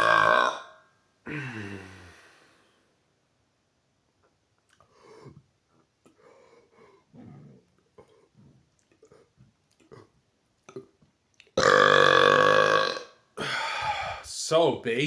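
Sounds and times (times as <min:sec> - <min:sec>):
man burping: 0:00.0 - 0:00.7, 0:01.3 - 0:01.9, 0:11.6 - 0:14.3.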